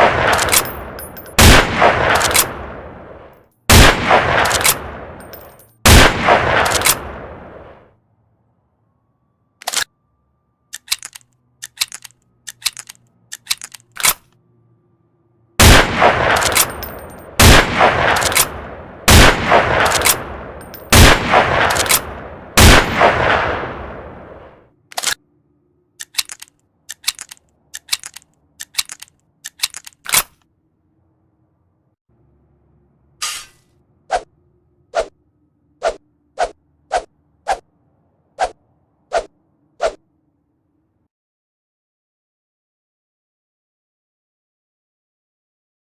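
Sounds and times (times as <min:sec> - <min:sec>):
loud rifle shots echoing: 0:00.0 - 0:05.2, 0:05.8 - 0:07.6, 0:15.6 - 0:24.5
rifle bolt clicks and rattles: 0:00.3 - 0:01.4, 0:02.1 - 0:02.5, 0:04.4 - 0:05.8, 0:06.6 - 0:07.0, 0:09.6 - 0:09.9, 0:10.7 - 0:14.4, 0:16.3 - 0:17.3, 0:18.1 - 0:18.5, 0:19.8 - 0:20.9, 0:21.7 - 0:22.0, 0:24.9 - 0:25.2, 0:26.0 - 0:30.5.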